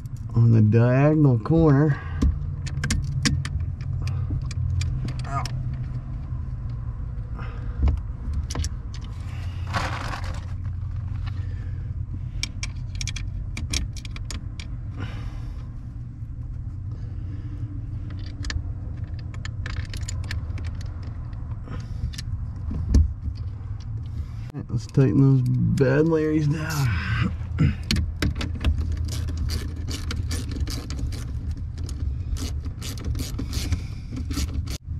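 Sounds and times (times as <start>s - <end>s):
steady low rumble: 0.0s - 34.9s
scraping: 9.1s - 11.8s.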